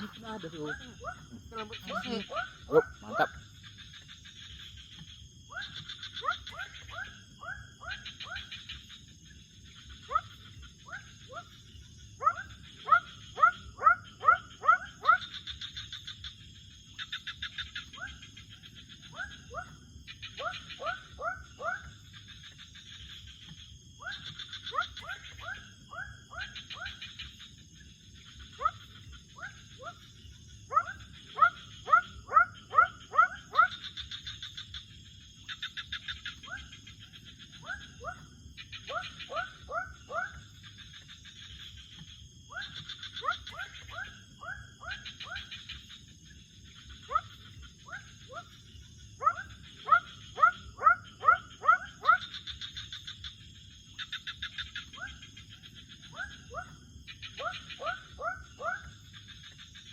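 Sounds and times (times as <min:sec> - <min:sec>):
high insect whine: 0:00.0 - 0:59.9.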